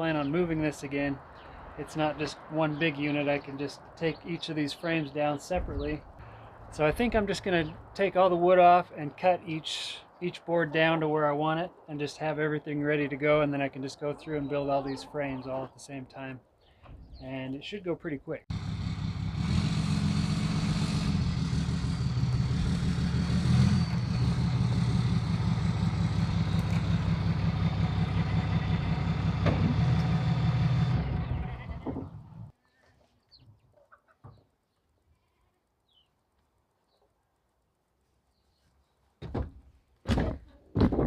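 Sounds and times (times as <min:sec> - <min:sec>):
power saw cutting lumber: 0:18.5 - 0:31.8.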